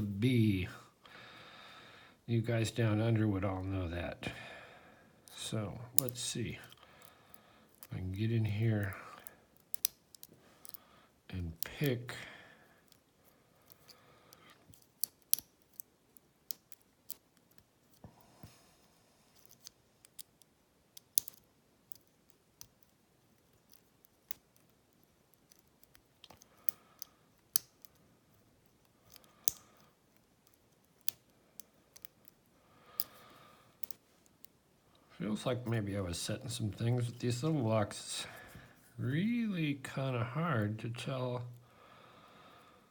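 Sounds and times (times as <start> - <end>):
lock pick clicking in padlock: 9.6 - 10.8, 14.6 - 15.9, 21.0 - 22.9, 23.6 - 28.0, 29.0 - 32.4.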